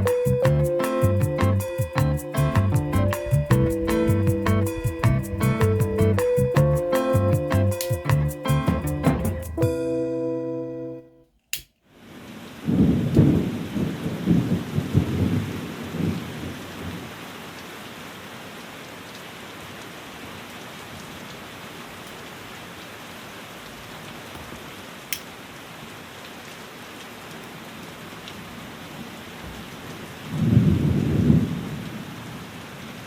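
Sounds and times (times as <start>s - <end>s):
steady rain: 0.0s - 8.9s, 11.9s - 33.0s
thunder rumbling: 2.5s - 8.2s, 12.6s - 17.1s, 30.3s - 31.9s.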